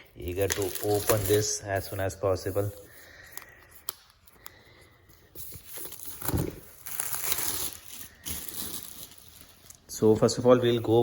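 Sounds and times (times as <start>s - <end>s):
packaging wrap tearing and crinkling: 0.3s - 1.5s, 5.8s - 9.9s.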